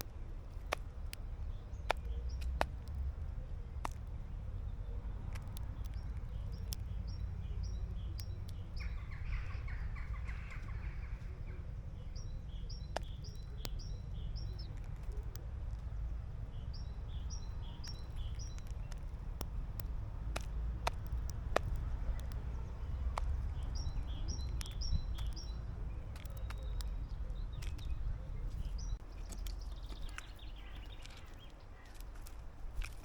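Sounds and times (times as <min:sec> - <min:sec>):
sharp clicks: 0:00.0 - 0:03.2, 0:03.8 - 0:11.4, 0:12.1 - 0:33.0
low wind rumble: 0:00.0 - 0:33.0
bird chattering: 0:04.7 - 0:15.3.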